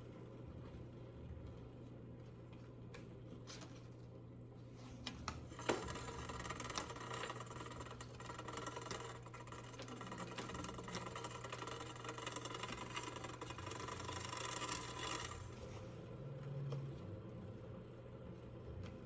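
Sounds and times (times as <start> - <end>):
bicycle chain clicking: 5.6 - 15.5.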